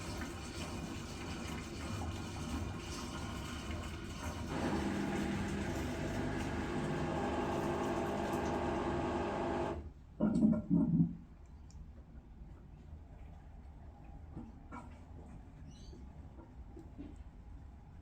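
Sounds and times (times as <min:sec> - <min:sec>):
washing machine pump humming: 0:00.0 - 0:09.9.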